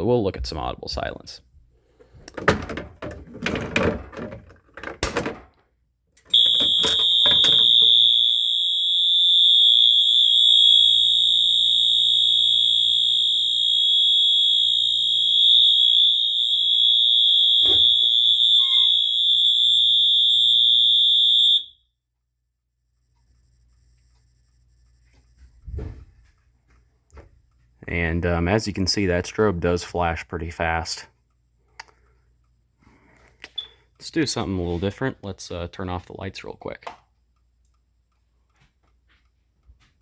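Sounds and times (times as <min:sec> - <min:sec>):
high-pitched alarm horn tone: 0:06.3 - 0:21.8.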